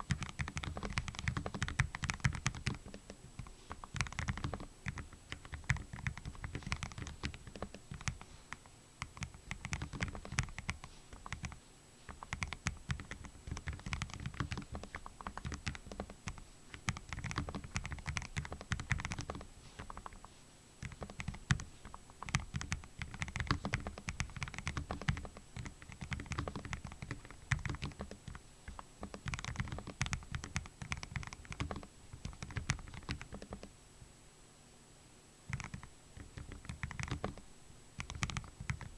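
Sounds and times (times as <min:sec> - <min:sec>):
mechanical keyboard typing: 0:00.0 - 0:08.2, 0:09.0 - 0:33.7, 0:35.5 - 0:37.4, 0:38.0 - 0:38.9.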